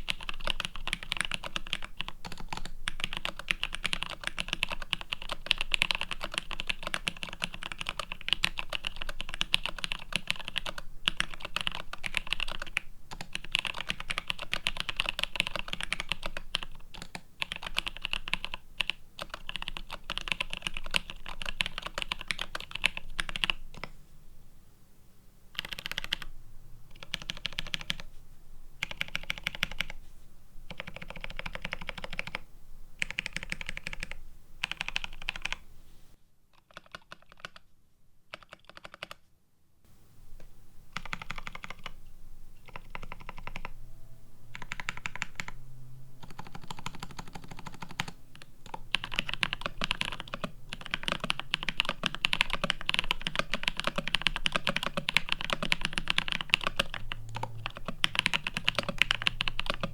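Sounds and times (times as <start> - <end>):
typing on mechanical keyboard: 0.0 - 24.0, 25.6 - 26.3, 26.9 - 28.1, 28.8 - 30.0, 30.7 - 32.4, 33.0 - 35.6, 36.6 - 37.6, 38.3 - 39.2, 41.0 - 42.0, 42.6 - 43.7, 44.5 - 45.6, 46.2 - 59.9.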